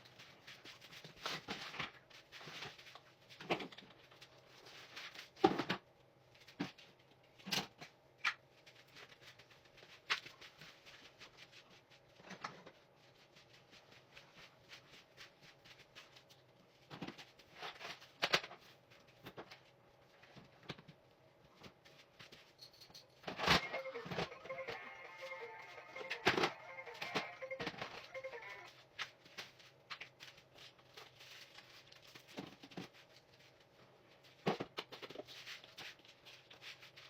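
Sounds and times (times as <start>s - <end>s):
rustling: 0.0s - 5.5s, 23.4s - 37.0s.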